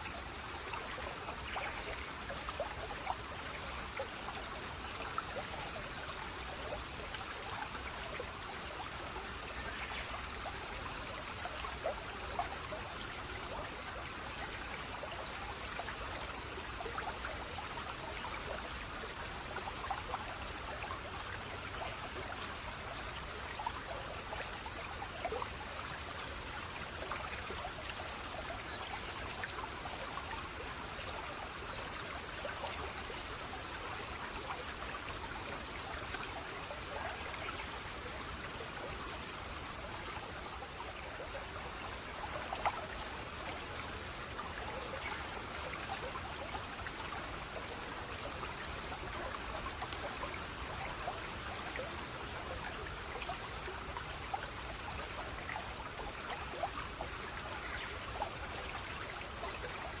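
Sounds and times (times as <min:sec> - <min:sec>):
stream water trickling: 0:00.0 - 1:00.0
water drips: 0:40.6 - 0:52.4.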